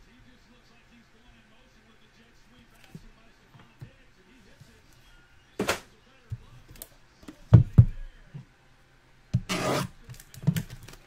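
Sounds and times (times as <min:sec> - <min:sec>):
dull thumps on a table: 0:07.4 - 0:08.0.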